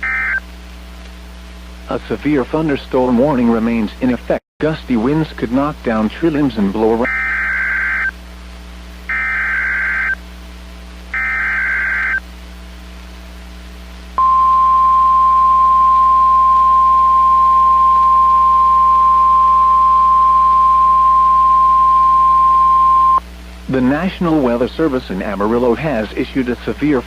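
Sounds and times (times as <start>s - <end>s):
screeching data bursts: 7.1s - 8.1s, 9.1s - 10.2s, 11.2s - 12.2s.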